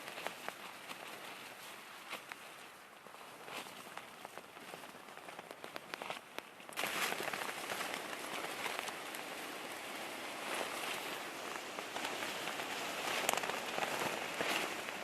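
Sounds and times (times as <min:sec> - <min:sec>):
rain pattering: 0:04.3 - 0:15.0.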